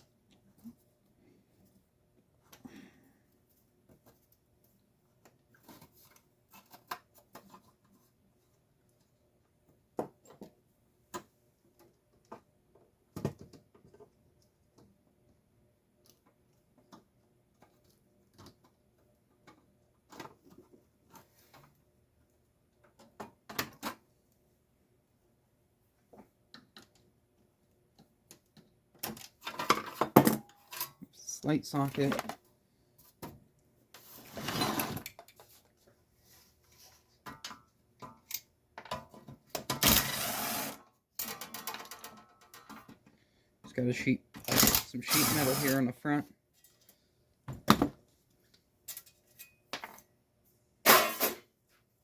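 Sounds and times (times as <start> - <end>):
tools and parts clicking and knocking: 28.0 - 31.0, 37.2 - 43.1, 44.3 - 45.8, 48.8 - 50.1.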